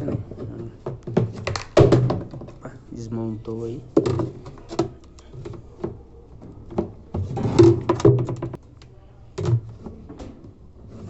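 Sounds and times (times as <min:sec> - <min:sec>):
plastic parts knocking: 0:00.0 - 0:02.6, 0:03.9 - 0:08.6.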